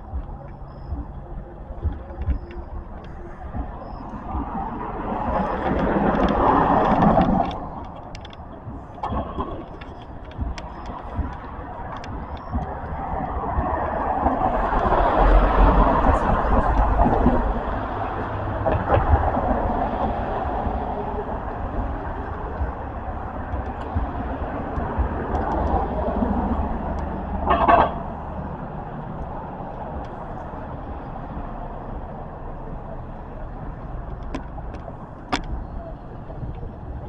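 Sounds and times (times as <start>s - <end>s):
traffic rumbling by: 0.0s - 37.0s.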